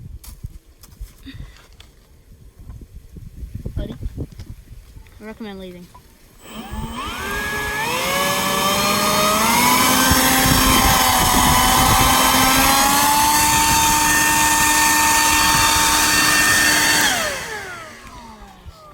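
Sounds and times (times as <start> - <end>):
leaf blower whine: 6.4 - 18.9.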